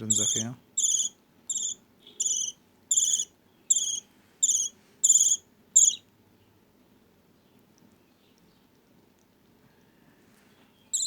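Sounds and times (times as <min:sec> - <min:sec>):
chick raspy begging chirps: 0:00.1 - 0:06.0.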